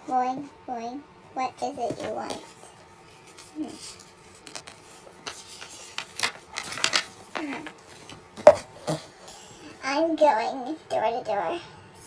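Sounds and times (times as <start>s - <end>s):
small objects clicking and tapping: 4.5s - 9.0s.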